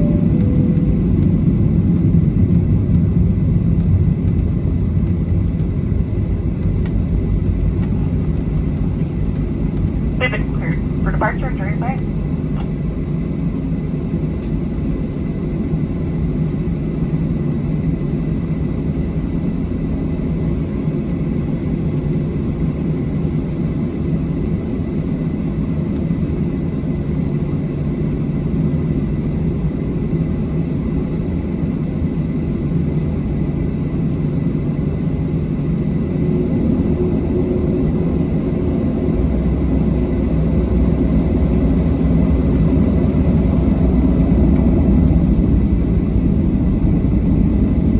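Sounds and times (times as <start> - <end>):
jet cabin rumble: 0.0 - 15.2, 34.0 - 47.9.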